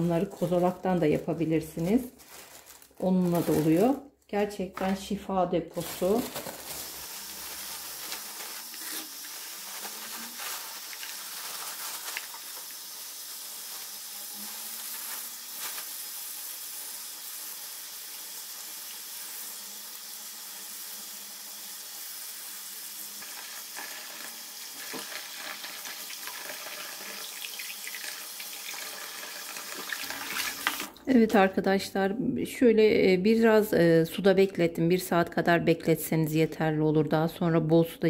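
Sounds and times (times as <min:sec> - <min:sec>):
tap water running into sink: 0:23.1 - 0:31.0.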